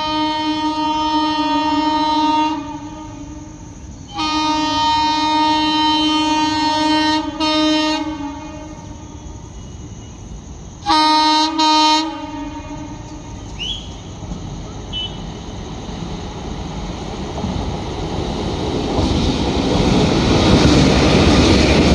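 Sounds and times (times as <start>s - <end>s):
locomotive horn blasts: 0.0s - 3.5s, 4.1s - 9.4s, 10.8s - 13.9s
train running noise: 0.0s - 21.9s.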